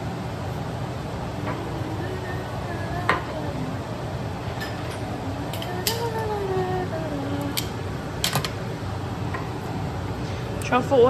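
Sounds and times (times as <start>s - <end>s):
range hood fan humming: 0.0s - 11.0s
cooking utensils clinking: 4.6s - 6.3s.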